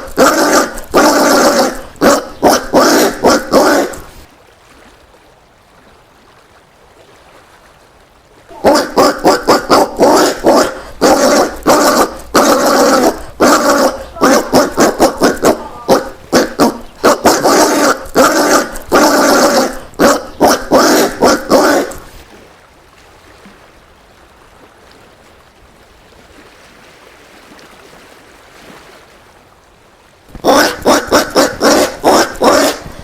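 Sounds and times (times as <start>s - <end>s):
peccary calling: 0.0s - 4.3s, 8.5s - 22.2s, 30.3s - 33.0s.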